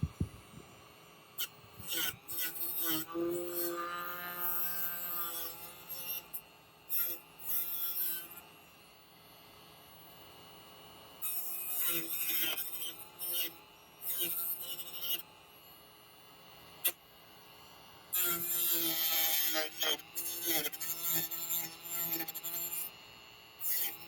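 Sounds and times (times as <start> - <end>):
blade rasping into plastic: 1.4 - 4.0.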